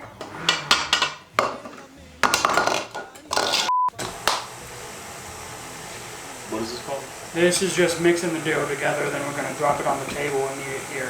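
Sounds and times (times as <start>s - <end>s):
dishes and utensils clattering: 0.0s - 4.5s
censor bleep: 3.7s - 4.0s.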